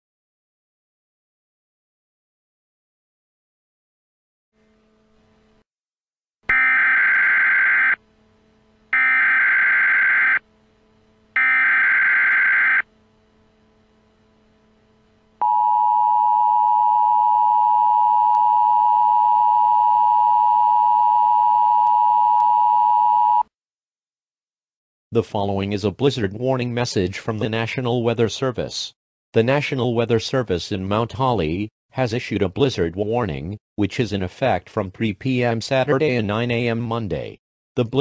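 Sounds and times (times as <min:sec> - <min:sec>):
steady attention signal tone: 0:06.5 - 0:23.4.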